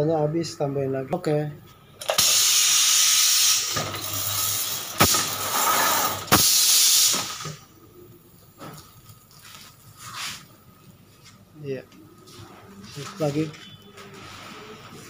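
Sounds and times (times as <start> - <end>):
spray gun hissing: 4.5 - 7.4.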